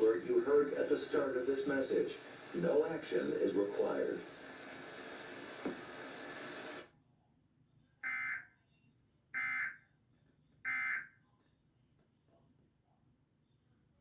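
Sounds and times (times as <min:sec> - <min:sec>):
steady hiss: 0:00.0 - 0:06.9.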